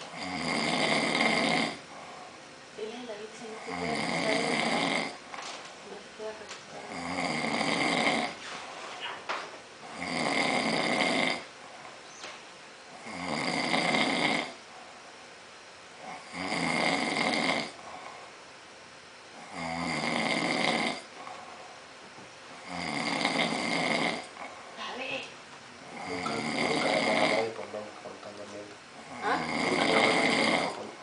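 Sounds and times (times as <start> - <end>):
man snoring: 0.0 - 2.2, 3.6 - 5.2, 6.9 - 8.4, 9.8 - 11.5, 12.9 - 14.6, 16.0 - 18.0, 19.4 - 21.1, 22.6 - 24.4, 25.8 - 27.8, 29.0 - 31.0.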